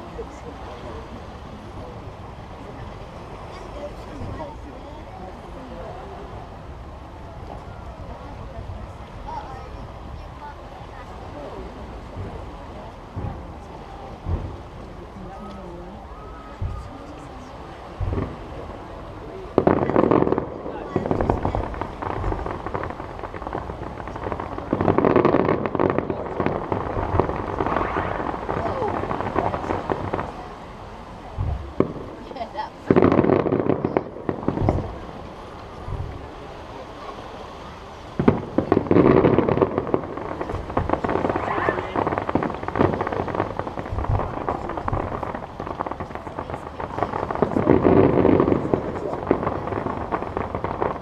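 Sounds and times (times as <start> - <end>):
fireworks cracking and popping: 0.0 - 51.0.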